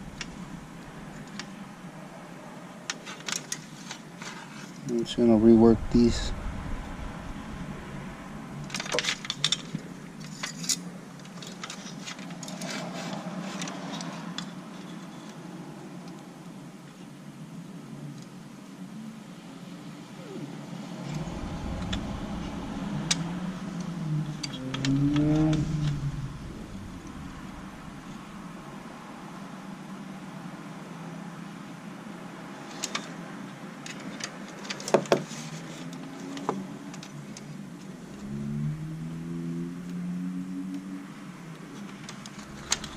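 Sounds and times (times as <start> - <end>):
steady low hum: 0.0 - 2.9, 4.9 - 10.8, 20.8 - 30.4.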